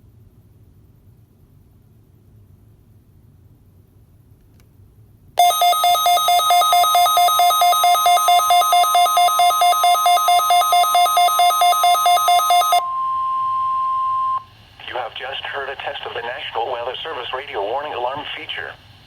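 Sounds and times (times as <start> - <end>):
two-tone electronic warble alarm: 5.4 - 14.5.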